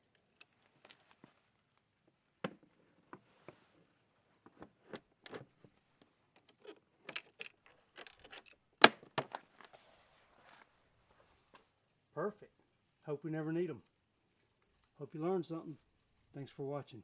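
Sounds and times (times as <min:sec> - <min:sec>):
plastic clicks knocks and scrapes: 0:04.5 - 0:05.7, 0:06.4 - 0:09.7.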